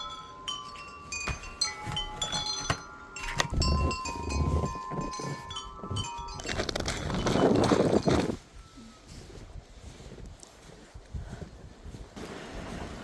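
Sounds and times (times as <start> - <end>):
wind chimes ringing: 0.0 - 9.4.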